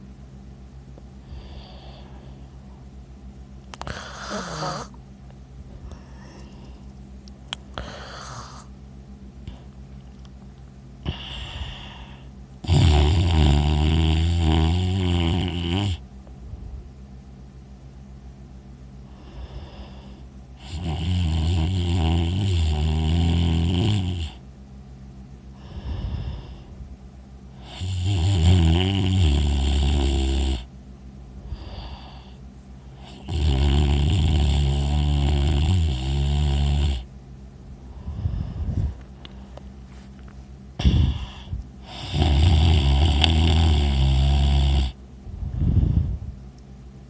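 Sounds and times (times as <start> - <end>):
quiet breaths: 1.0 - 2.9, 5.7 - 7.0, 7.6 - 8.8, 11.0 - 12.4, 19.0 - 21.0, 25.4 - 28.1, 29.0 - 37.1, 37.7 - 46.4
person snoring loudly: 3.8 - 5.0, 7.8 - 8.7, 11.0 - 16.0, 19.2 - 24.4, 27.6 - 30.7, 33.0 - 37.1, 40.8 - 45.0.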